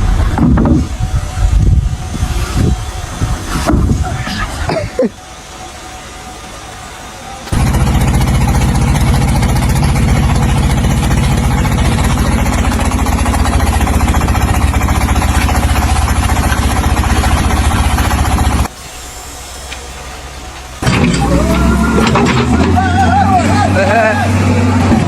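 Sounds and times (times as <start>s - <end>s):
loud engine running: 7.4s - 18.7s, 19.7s - 25.0s.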